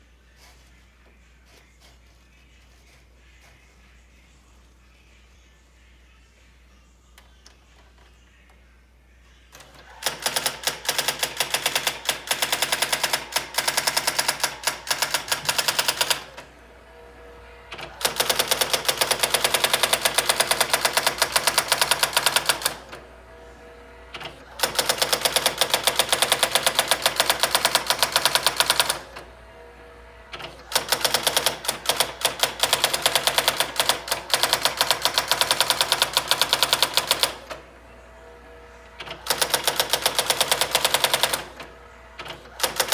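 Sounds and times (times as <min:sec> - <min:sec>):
electronic typewriter key strikes: 0:09.6 - 0:16.4, 0:17.7 - 0:22.9, 0:24.2 - 0:29.2, 0:30.4 - 0:37.6, 0:39.0 - 0:41.6.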